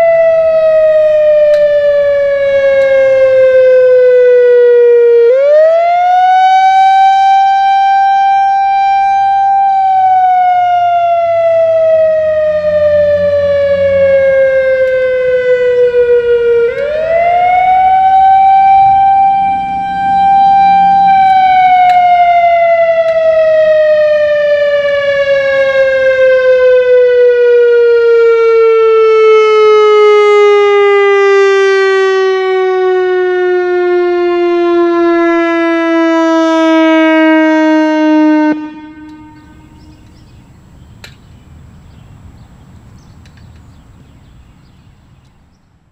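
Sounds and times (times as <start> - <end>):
outdoor warning siren wailing: 0.0 - 42.3.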